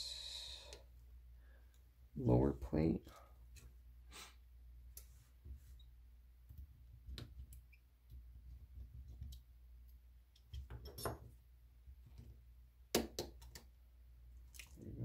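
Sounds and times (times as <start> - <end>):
low steady hum: 13.8 - 15.0.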